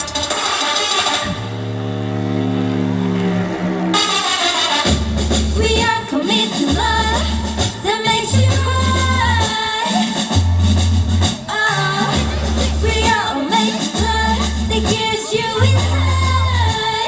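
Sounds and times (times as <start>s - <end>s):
pop dance track with woman singing: 4.8s - 17.0s.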